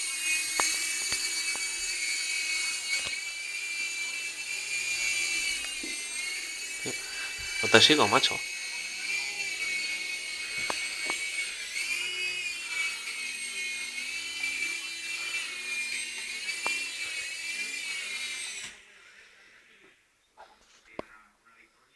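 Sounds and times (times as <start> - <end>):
helicopter whine: 0.0 - 18.8
faint clicks: 0.1 - 2.0.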